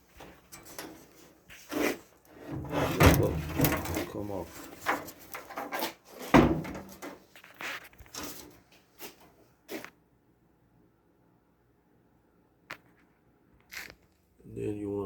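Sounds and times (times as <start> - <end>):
knocks and clunks of panels handled: 2.4 - 7.2.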